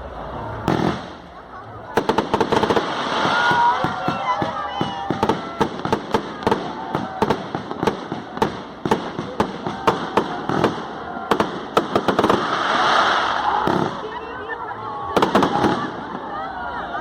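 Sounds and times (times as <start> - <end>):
fireworks bangs and pops: 0.6 - 14.2, 15.1 - 16.3
crackling hiss: 5.3 - 14.0.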